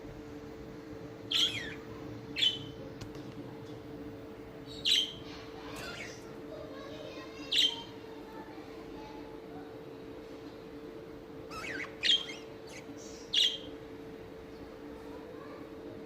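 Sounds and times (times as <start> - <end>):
steady low hum: 0.0 - 16.0
budgerigars chirping: 1.3 - 1.8, 2.4 - 2.7, 4.7 - 6.3, 11.5 - 13.7.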